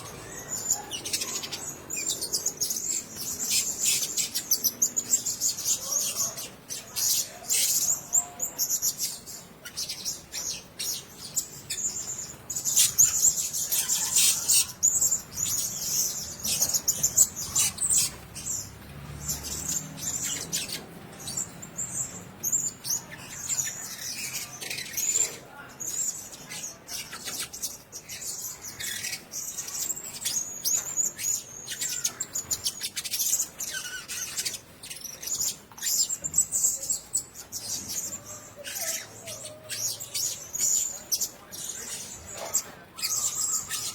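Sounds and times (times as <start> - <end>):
parrots chirping shrilly: 10.5 - 18.6, 28.2 - 43.9.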